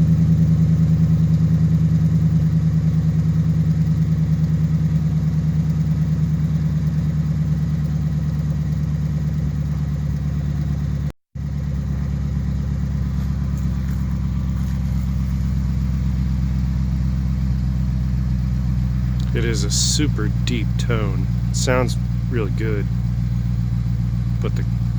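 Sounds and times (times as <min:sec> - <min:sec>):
deep car engine idling: 0:00.0 - 0:24.9.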